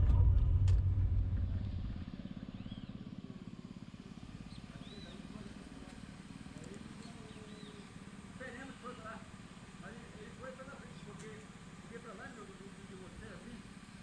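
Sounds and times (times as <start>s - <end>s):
engine rumbling and puttering: 0.0s - 14.0s
bird chirps: 2.5s - 3.1s, 4.5s - 5.3s, 7.0s - 8.0s.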